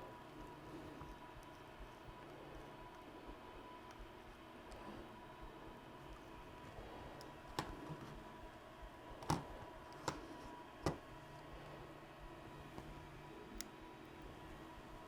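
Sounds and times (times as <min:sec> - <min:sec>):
small plastic parts clicking: 0:09.2 - 0:11.0.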